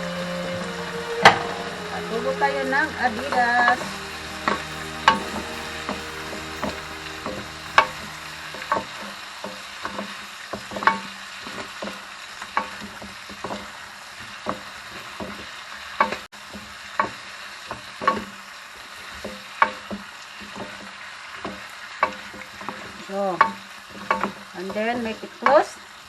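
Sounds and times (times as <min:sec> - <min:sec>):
food sizzling in a pan: 0:00.0 - 0:10.1.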